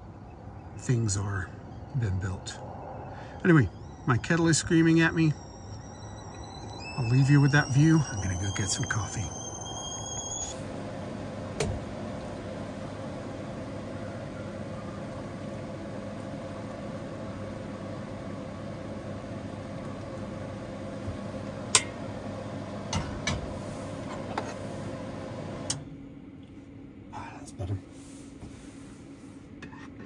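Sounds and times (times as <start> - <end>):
steady mechanical hum: 0.0 - 30.0.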